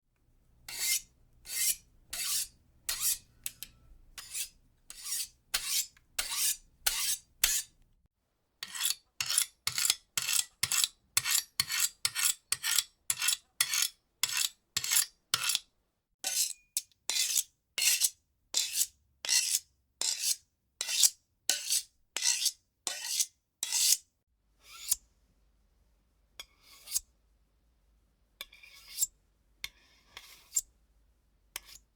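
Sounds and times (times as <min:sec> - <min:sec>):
knife being sharpened: 0:00.7 - 0:07.7, 0:08.6 - 0:15.6, 0:16.3 - 0:24.0, 0:26.4 - 0:27.0, 0:28.4 - 0:30.6, 0:31.6 - 0:31.8.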